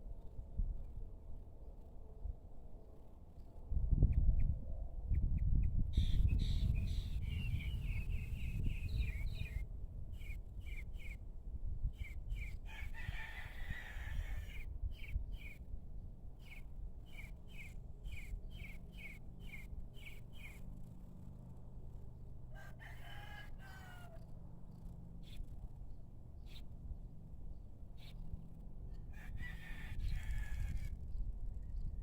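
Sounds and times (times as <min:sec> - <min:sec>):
distant rooster crowing: 0:12.6 - 0:14.7, 0:22.5 - 0:24.3, 0:28.9 - 0:31.0.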